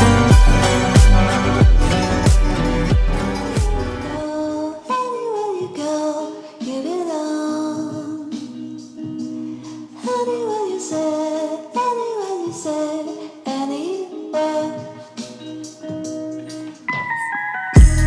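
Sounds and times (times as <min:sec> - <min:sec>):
steady musical accompaniment: 0:00.0 - 0:04.3
woman singing high melody: 0:04.2 - 0:09.1, 0:10.0 - 0:15.6.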